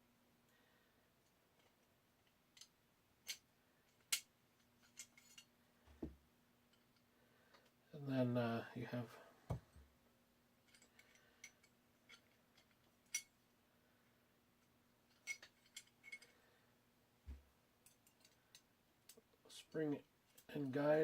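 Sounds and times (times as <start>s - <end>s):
small metal parts clicking and clinking: 1.6s - 5.5s, 10.6s - 13.4s, 14.6s - 16.4s, 17.8s - 19.2s.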